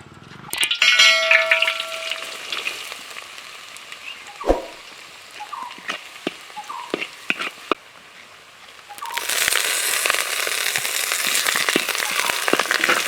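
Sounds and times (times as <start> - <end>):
food sizzling in a pan: 0.6 - 13.0
metallic clang: 0.8 - 2.4.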